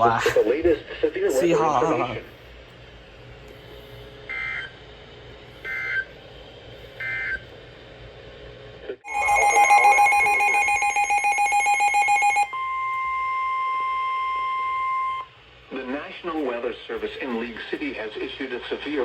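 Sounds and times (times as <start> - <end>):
rapidly pulsing alarm: 4.3 - 4.8, 5.6 - 6.1, 7.0 - 7.4, 9.0 - 15.4
steady warning alarm tone: 4.3 - 4.8, 5.6 - 6.1, 7.0 - 7.4, 9.1 - 15.4
warbling digital data bursts: 9.1 - 12.4.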